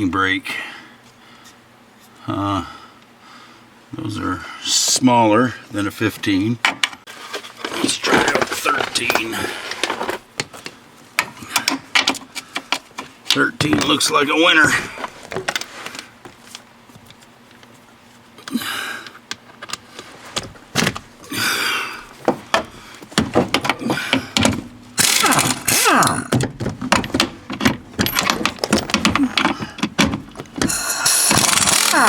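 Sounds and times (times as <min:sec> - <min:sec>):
pneumatic impact wrench bursts: 0:25.0 - 0:25.9, 0:30.6 - 0:32.0.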